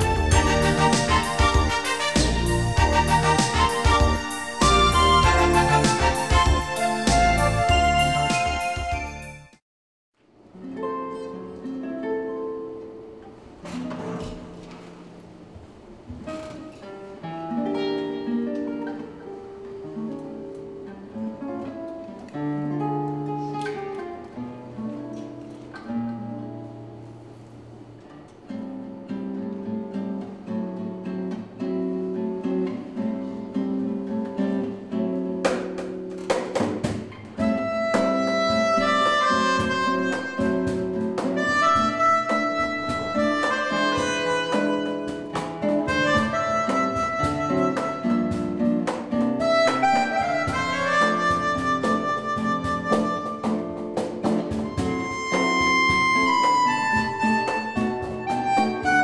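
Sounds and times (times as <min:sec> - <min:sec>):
light percussion strikes: 0:00.0 - 0:09.1, 0:35.4 - 0:59.0
acoustic guitar chords: 0:00.0 - 0:09.6, 0:10.5 - 0:59.0
free-reed keyboard melody: 0:00.0 - 0:09.6, 0:36.9 - 0:59.0.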